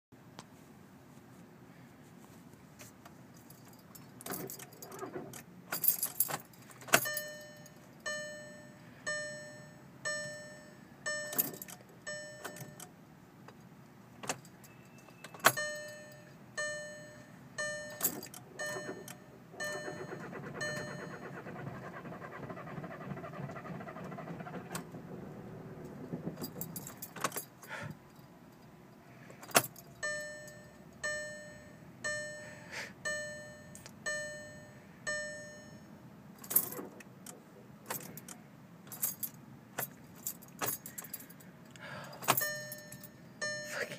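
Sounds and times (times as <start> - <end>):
dashboard warning chime: 7.0 - 12.9, 14.6 - 22.4, 29.9 - 36.8, 42.2 - 43.9
starter cranking engine: 18.6 - 26.8.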